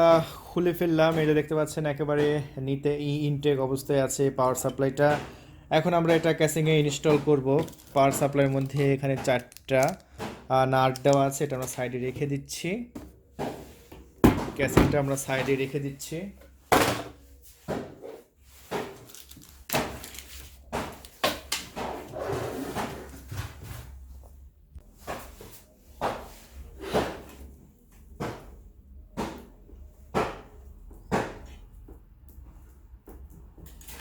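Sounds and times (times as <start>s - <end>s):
rustling handling noise: 4.0s - 16.6s, 18.2s - 21.2s.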